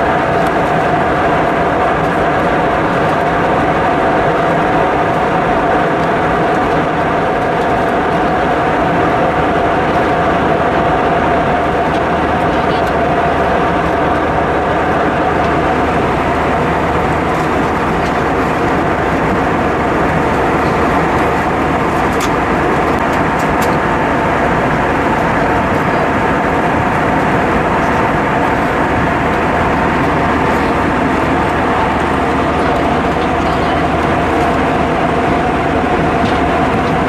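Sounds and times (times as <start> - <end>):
airplane cabin noise: 0.0 - 37.0.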